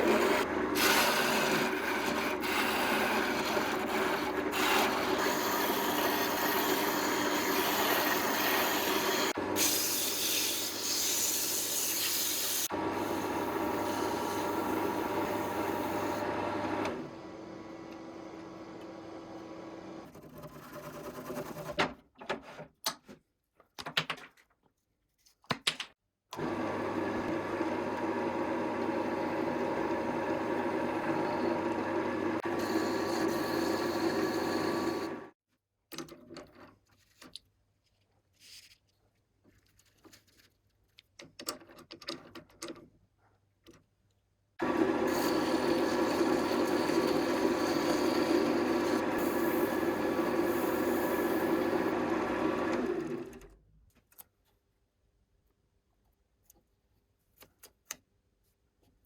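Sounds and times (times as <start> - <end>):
wood lathe running: 0.0 - 10.8, 12.6 - 18.9, 26.4 - 35.4, 44.6 - 53.4.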